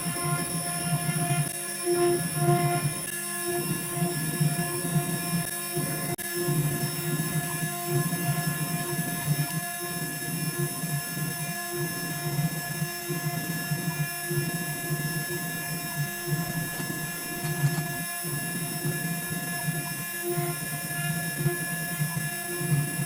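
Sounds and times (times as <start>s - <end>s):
cnc router machine whine: 0.0s - 23.0s
uneven low hum: 14.5s - 23.0s.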